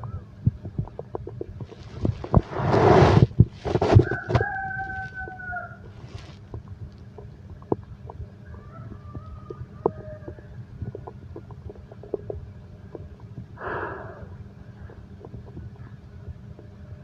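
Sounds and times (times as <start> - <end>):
stomach growling and gurgling: 0.0 - 17.0.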